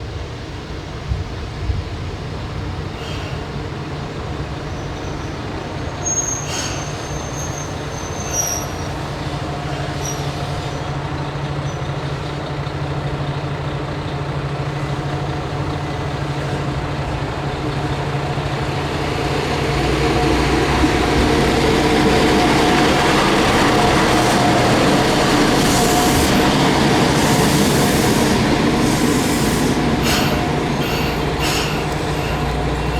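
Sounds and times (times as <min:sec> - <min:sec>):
diesel railcar engine drone: 0:00.0 - 0:32.9
train wheel noise: 0:00.1 - 0:32.9
wheel and brake squeal: 0:04.7 - 0:10.9, 0:24.0 - 0:32.9.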